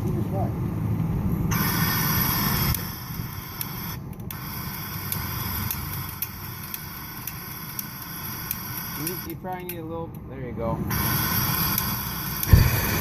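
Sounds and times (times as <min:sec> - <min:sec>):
gas torch hissing: 0:01.5 - 0:09.4, 0:10.9 - 0:13.0
faint irregular ticks: 0:02.7 - 0:09.8.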